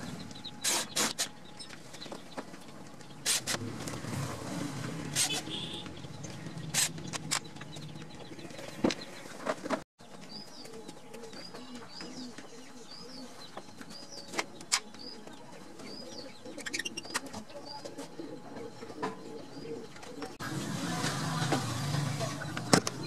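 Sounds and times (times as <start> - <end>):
pigeons cooing: 10.4 - 23.0.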